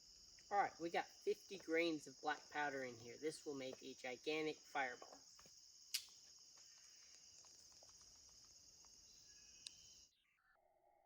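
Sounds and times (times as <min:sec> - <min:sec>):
crickets chirping: 0:00.0 - 0:10.5
sharp click: 0:05.9 - 0:06.2.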